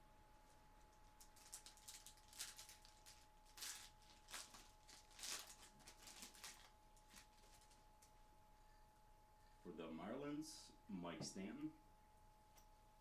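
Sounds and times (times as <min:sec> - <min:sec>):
wrapper and cards crinkling: 0:00.9 - 0:08.1.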